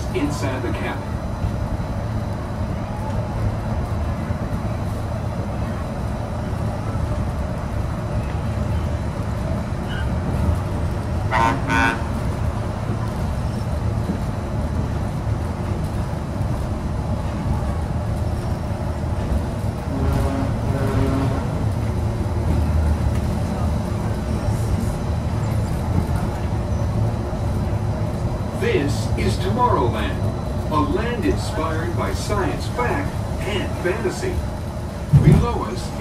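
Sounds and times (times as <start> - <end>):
monorail running rumble: 0.0 - 36.0.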